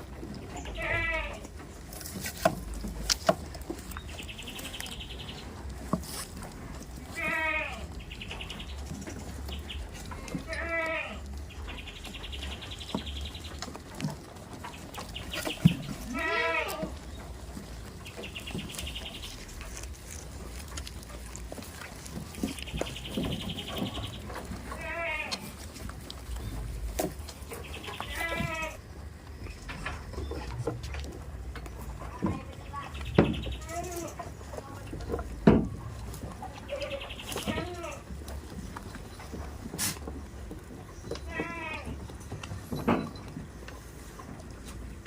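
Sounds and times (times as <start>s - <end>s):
goats bleating: 0.6s - 1.6s, 7.0s - 8.0s, 9.9s - 11.5s, 15.8s - 17.8s, 22.4s - 25.8s, 27.9s - 28.8s, 36.5s - 38.2s, 41.2s - 42.1s.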